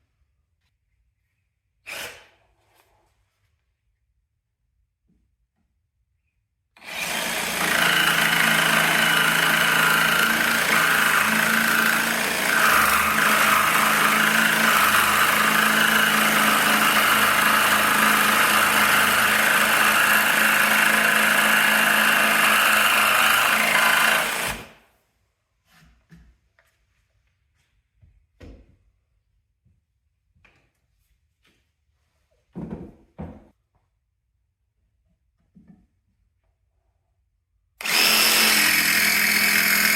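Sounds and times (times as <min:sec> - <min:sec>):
jigsaw cutting wood: 0:06.8 - 0:24.8, 0:37.8 - 0:39.9.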